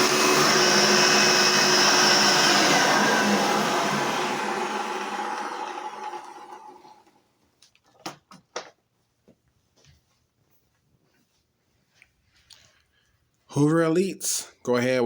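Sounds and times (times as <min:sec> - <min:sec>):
vacuum cleaner motor running: 0:00.0 - 0:07.2.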